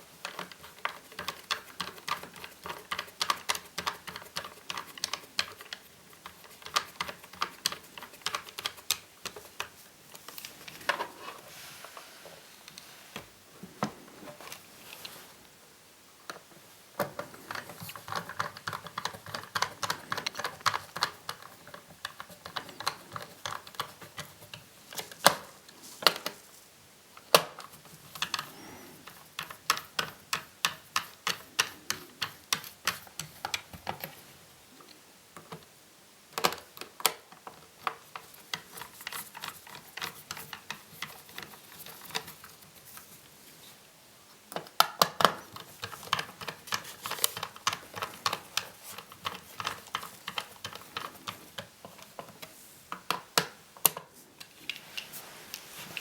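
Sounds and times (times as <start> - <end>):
laptop parts clicking: 0.2 - 11.2, 17.0 - 26.4, 27.2 - 34.2, 36.3 - 43.1, 44.5 - 55.1.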